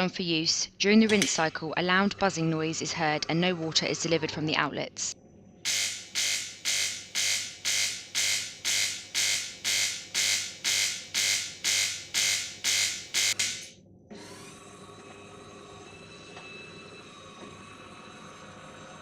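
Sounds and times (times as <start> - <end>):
coffee machine pump buzzing: 5.7 - 19.0.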